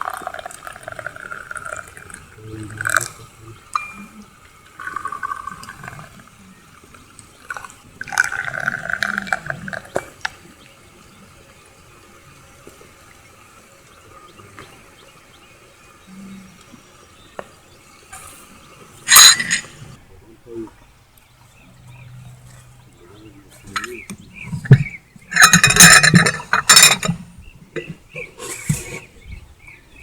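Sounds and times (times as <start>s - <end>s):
liquid pouring: 0.0s - 10.8s.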